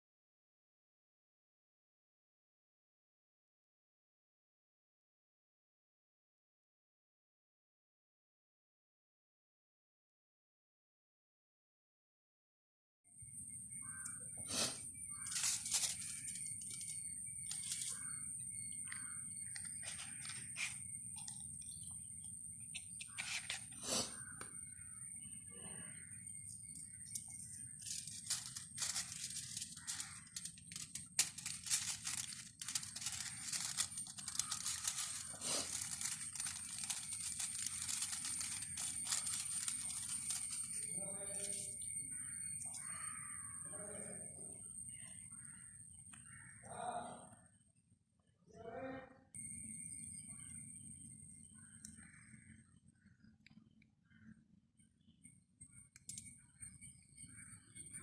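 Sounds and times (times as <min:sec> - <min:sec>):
aluminium foil crinkling: 0:13.9 - 0:21.8, 0:26.5 - 0:43.1.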